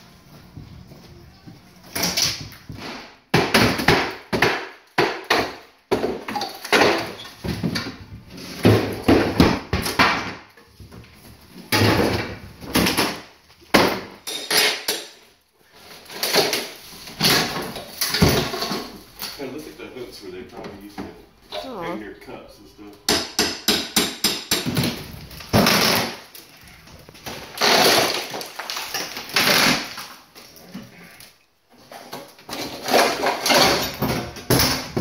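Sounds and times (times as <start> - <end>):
demolition knocks and bangs: 2.7 - 10.4.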